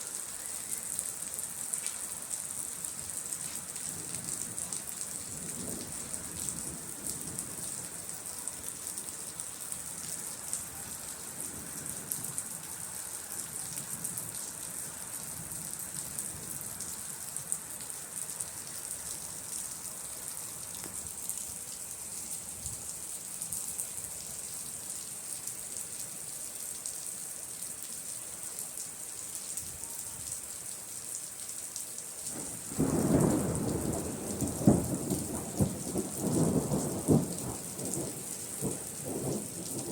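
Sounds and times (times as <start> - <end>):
steady rain hiss: 0.0 - 39.9
thunder clap and rumble: 32.4 - 39.9.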